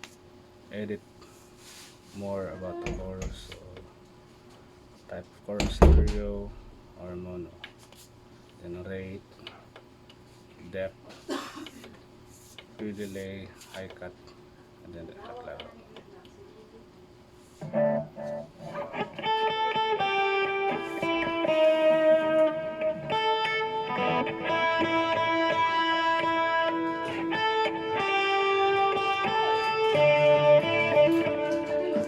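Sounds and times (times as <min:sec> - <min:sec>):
electric guitar with chorus and delay: 0:17.6 - 0:32.0.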